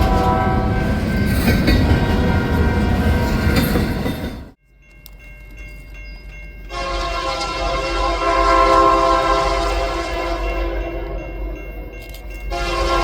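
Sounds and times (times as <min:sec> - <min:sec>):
locomotive air horn chord: 0:00.0 - 0:01.0, 0:06.7 - 0:10.9, 0:12.5 - 0:13.0
loud train noise: 0:00.0 - 0:13.0.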